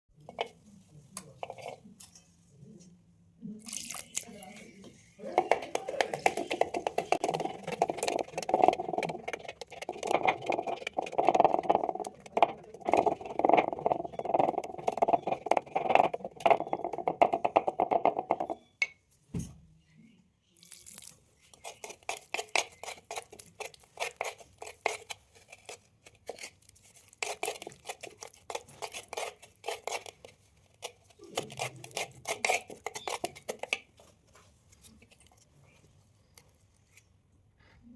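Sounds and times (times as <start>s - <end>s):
clay crunching and crumbling: 5.2s - 18.6s, 20.6s - 37.2s.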